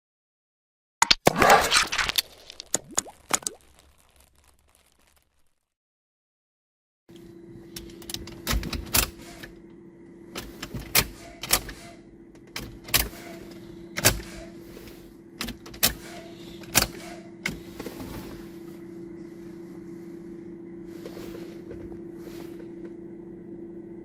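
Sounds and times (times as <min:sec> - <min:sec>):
electrical hum: 0:07.1 - 0:24.0.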